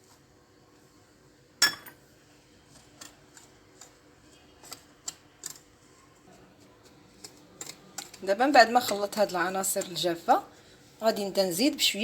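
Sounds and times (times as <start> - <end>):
utensil clinking against bowl: 1.6 - 2.0
stirring dry ingredients in bowl: 2.6 - 12.0.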